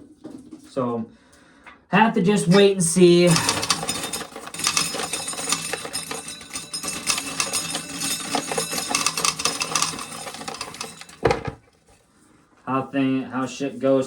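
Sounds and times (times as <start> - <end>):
corn kernels clattering into container: 2.4 - 11.6.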